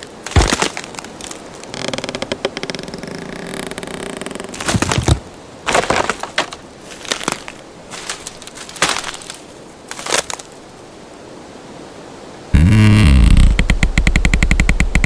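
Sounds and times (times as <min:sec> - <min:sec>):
wood cracking and snapping: 0:00.0 - 0:10.6
faint forest background: 0:00.0 - 0:15.0
low sound with falling pitch: 0:12.6 - 0:15.0.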